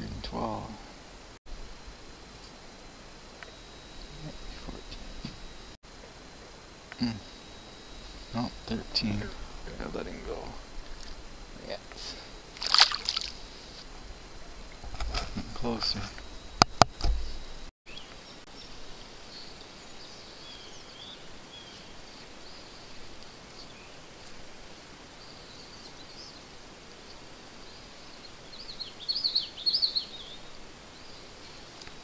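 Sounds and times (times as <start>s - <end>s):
steady hiss: 0.0s - 32.0s
high wavering chirps: 1.7s - 16.6s.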